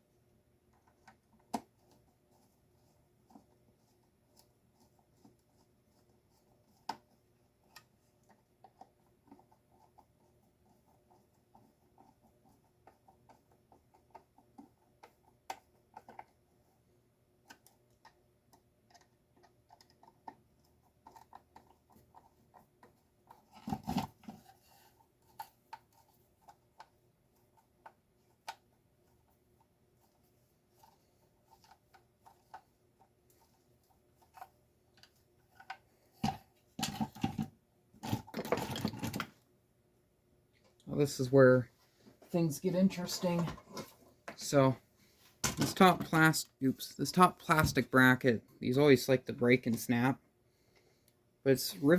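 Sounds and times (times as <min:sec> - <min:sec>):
parts clattering: 0:34.2 - 0:39.4, 0:42.2 - 0:46.2.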